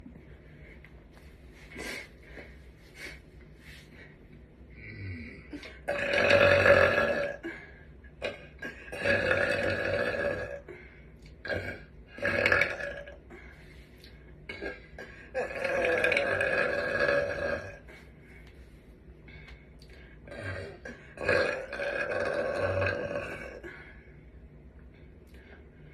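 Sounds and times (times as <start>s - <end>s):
girl burping loudly: 5.5s - 7.6s, 8.2s - 10.7s, 11.4s - 13.2s, 14.5s - 17.8s, 20.3s - 23.7s.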